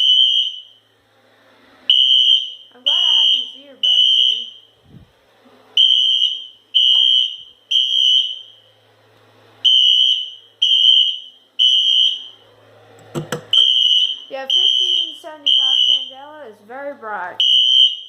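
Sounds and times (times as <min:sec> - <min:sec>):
fire alarm horn blasts: 0:00.0 - 0:00.9, 0:01.9 - 0:04.8, 0:05.8 - 0:08.7, 0:09.6 - 0:12.4, 0:13.5 - 0:16.3, 0:17.4 - 0:18.0.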